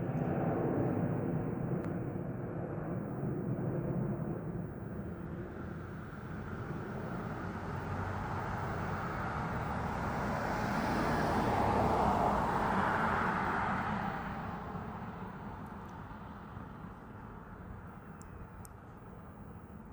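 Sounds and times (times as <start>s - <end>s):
jet airliner flying past: 0.0s - 19.9s.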